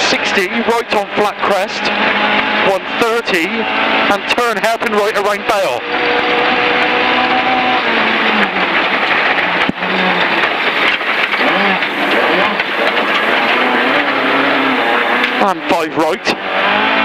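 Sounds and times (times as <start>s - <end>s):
rally car engine revving: 0.0s - 17.0s
road noise: 0.0s - 17.0s.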